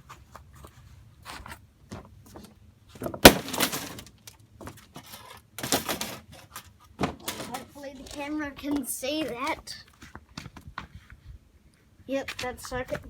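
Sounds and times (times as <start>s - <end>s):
small pieces clattering: 3.2s - 4.4s.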